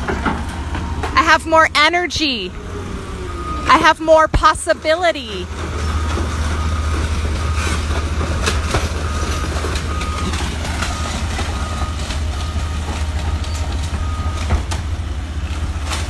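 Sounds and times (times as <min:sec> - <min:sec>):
machinery engine rumble: 0:00.0 - 0:16.0
warning beep: 0:01.2 - 0:02.6, 0:03.2 - 0:06.8.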